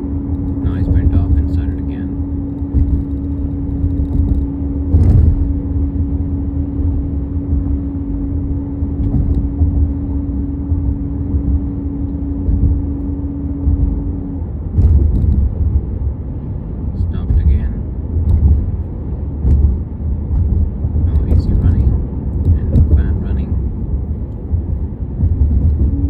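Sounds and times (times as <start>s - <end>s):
car road rumble: 0.0s - 26.0s
constant hum: 0.0s - 26.0s
car bumps: 2.6s - 5.6s, 12.3s - 13.0s, 14.7s - 16.0s, 17.2s - 26.0s.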